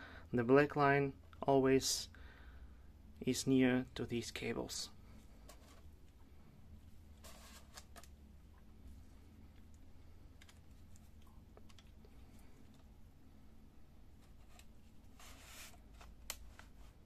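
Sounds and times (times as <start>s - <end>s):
low room tone hum: 0.0s - 17.0s.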